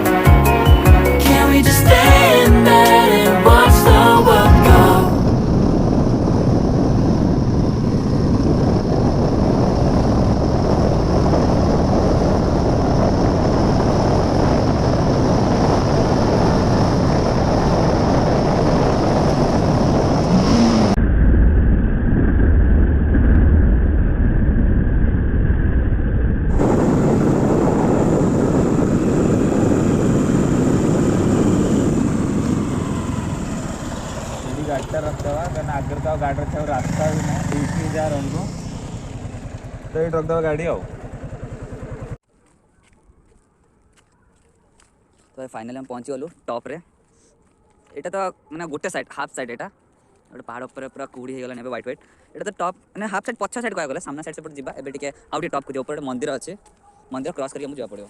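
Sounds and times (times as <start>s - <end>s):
wind on microphone: 3.5s - 42.2s
motorcycle engine running: 26.5s - 42.2s.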